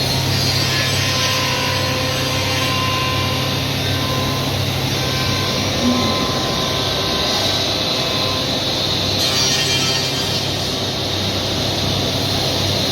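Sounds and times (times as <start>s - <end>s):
cnc router cutting wood: 0.0s - 12.9s
low machine hum: 1.4s - 9.2s.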